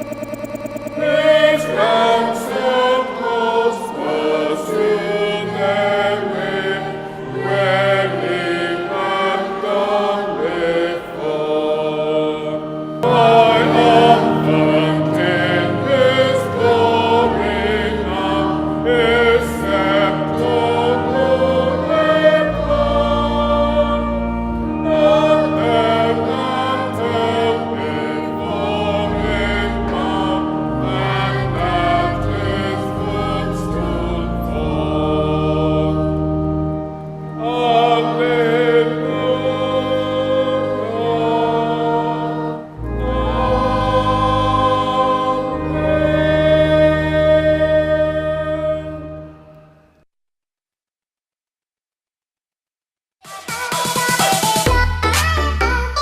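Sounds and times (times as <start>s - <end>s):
organ accompaniment: 0.0s - 50.0s
choir singing a hymn: 0.9s - 50.0s.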